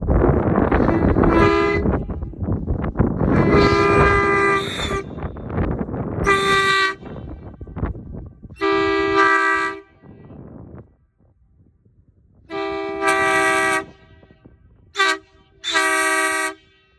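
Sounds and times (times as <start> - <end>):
truck horn blasts: 0.6 - 2.4, 3.2 - 5.6, 6.2 - 7.6, 8.6 - 10.4, 12.5 - 16.9.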